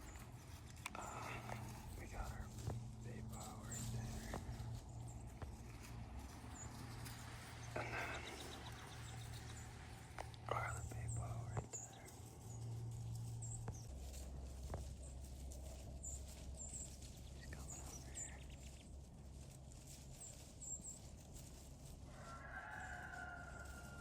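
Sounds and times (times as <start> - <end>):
bird chirps: 0.0 - 19.0
steady low hum: 0.0 - 24.0.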